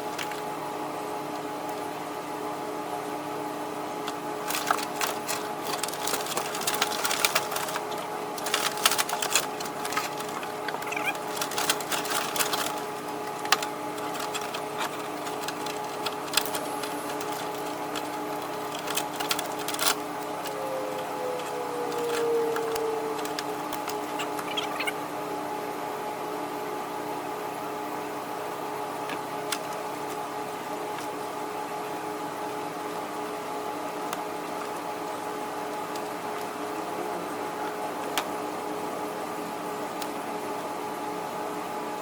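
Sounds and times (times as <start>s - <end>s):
steady hum: 0.0s - 42.0s
plastic clips clicking and rattling: 4.1s - 20.6s, 21.4s - 24.9s.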